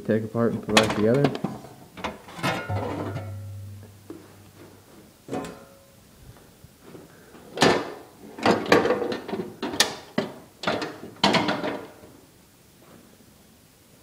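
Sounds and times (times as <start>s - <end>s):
metal parts clanking and scraping: 2.0s - 3.6s.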